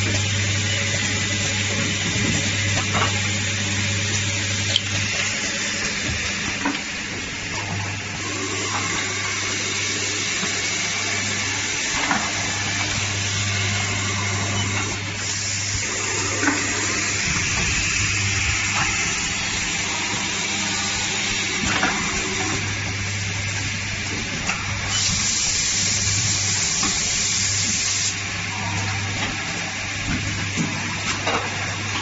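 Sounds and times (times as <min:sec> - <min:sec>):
low machine hum: 0:00.0 - 0:26.9
machine hiss: 0:08.1 - 0:23.2, 0:24.6 - 0:28.2.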